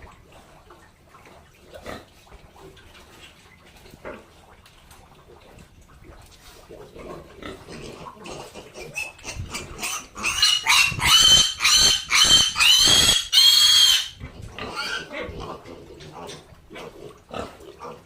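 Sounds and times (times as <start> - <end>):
pig grunting: 6.6 - 13.2, 14.2 - 18.0
pig squealing: 7.4 - 18.0.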